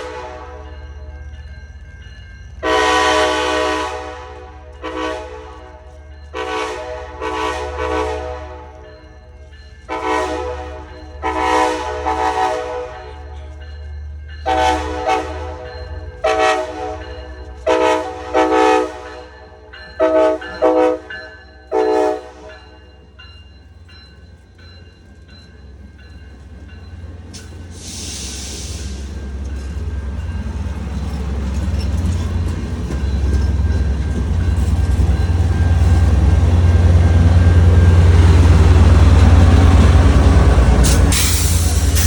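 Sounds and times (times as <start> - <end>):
locomotive air horn blasts: 0.0 - 0.7, 2.6 - 8.8, 9.9 - 13.2, 14.5 - 19.2, 20.0 - 21.1, 21.7 - 22.6
diesel locomotive rumble: 23.7 - 42.0
brief hiss: 40.8 - 42.0.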